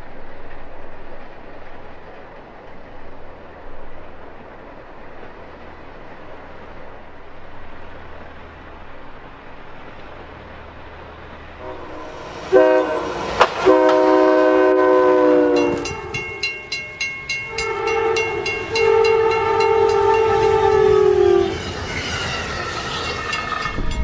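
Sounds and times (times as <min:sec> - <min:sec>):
train rumble: 0:00.0 - 0:24.0
train horn blasts: 0:11.6 - 0:16.8, 0:17.4 - 0:22.7.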